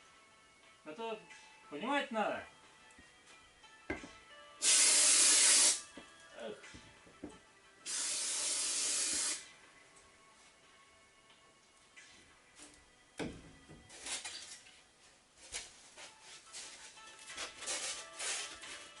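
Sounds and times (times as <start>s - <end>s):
pressurised spray hissing: 4.6s - 5.8s, 7.8s - 9.4s.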